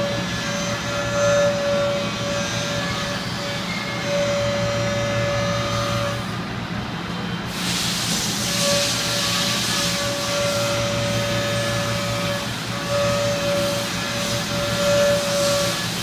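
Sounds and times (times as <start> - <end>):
loud hiss: 7.5 - 10.3
machine tool cutting steel: 8.4 - 16.0.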